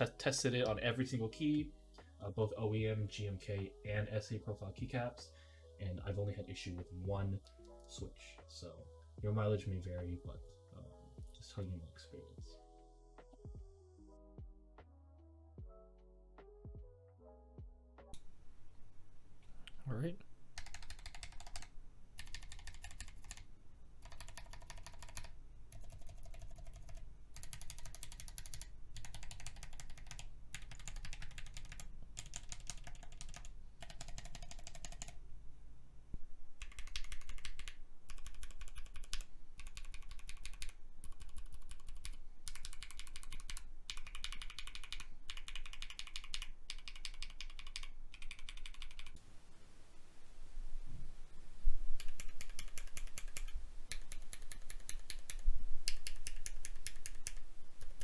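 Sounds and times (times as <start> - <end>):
typing on mechanical keyboard: 20.6 - 23.4, 24.0 - 35.2, 36.6 - 49.2, 52.0 - 58.0.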